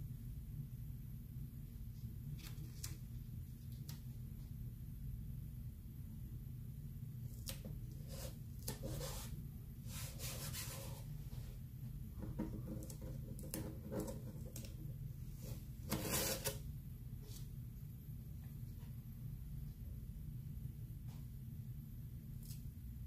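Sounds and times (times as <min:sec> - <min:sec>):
squeegee scraping paste on stencil: 0:15.4 - 0:16.6.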